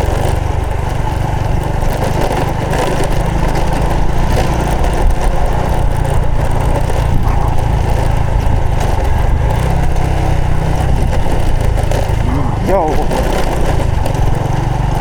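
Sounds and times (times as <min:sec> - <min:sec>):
motorcycle engine running: 0:00.0 - 0:15.0
dense rushing noise: 0:05.9 - 0:15.0.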